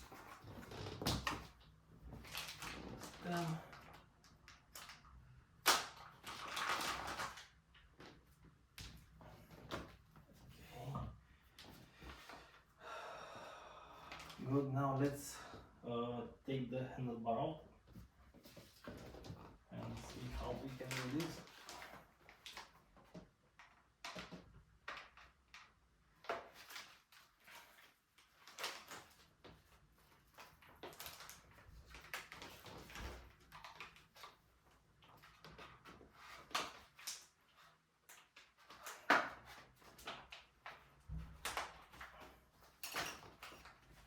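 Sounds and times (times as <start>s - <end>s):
clicks and knocks of parts: 38.1s - 44.0s.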